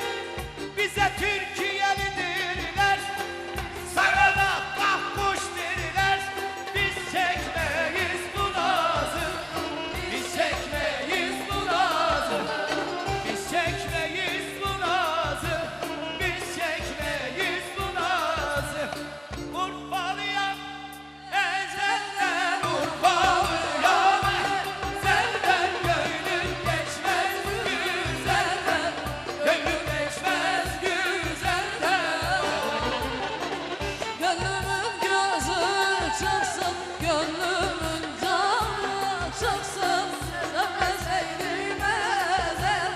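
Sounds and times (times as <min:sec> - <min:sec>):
steady drum beat: 0:00.0 - 0:42.9.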